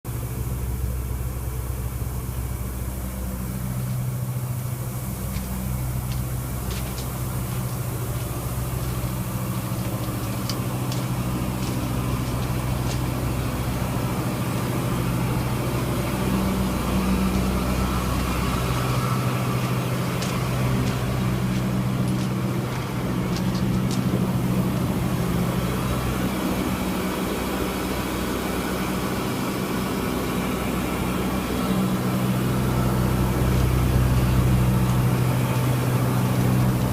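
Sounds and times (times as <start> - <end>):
air conditioner unit humming: 0.1 - 36.9.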